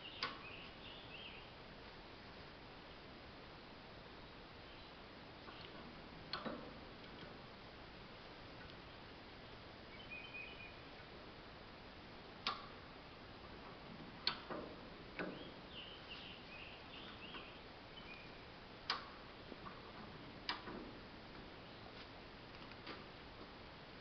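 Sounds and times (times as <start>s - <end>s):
sharp clicks: 14.2s - 14.6s, 18.9s - 19.2s.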